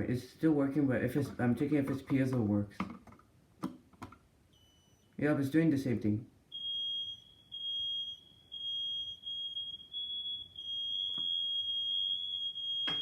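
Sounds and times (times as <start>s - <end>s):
smoke alarm beeping: 4.5s - 5.2s, 6.5s - 13.0s.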